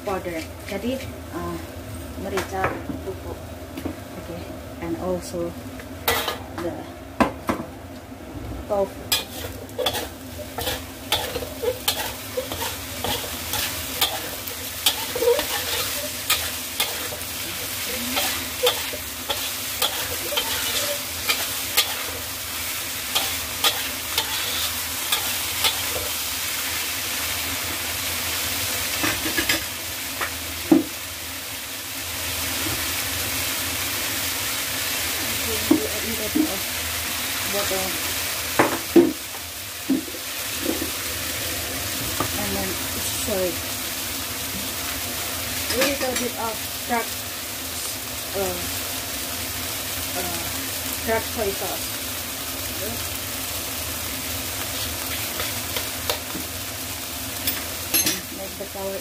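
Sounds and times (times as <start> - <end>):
food sizzling in a pan: 0.0 - 59.0
spatula scraping a pan: 9.1 - 17.4, 18.0 - 22.3, 23.1 - 26.2.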